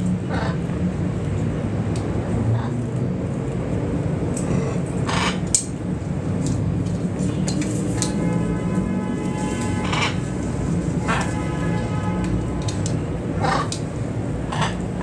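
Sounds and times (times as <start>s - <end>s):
city traffic rumble: 0.0s - 15.0s
macaw squawking: 4.4s - 5.4s.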